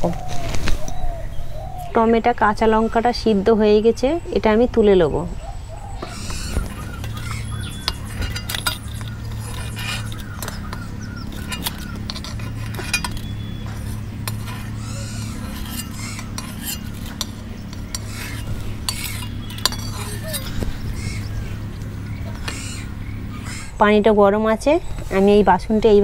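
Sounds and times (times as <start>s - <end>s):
steady low hum: 0.0s - 26.0s
utensils clinking against pot: 6.2s - 21.3s.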